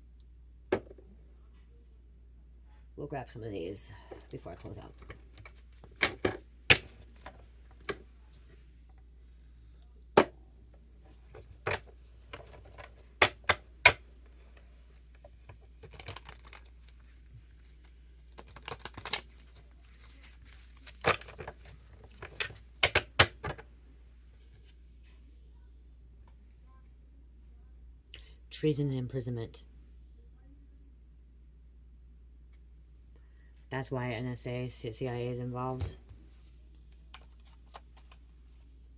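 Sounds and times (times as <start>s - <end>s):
cards rustling while shuffled: 15.8s - 23.2s, 35.7s - 38.7s.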